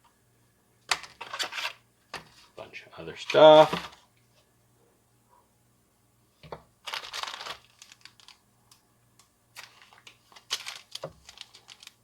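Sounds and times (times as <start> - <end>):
packaging rustling: 6.8 - 8.4, 9.6 - 12.0.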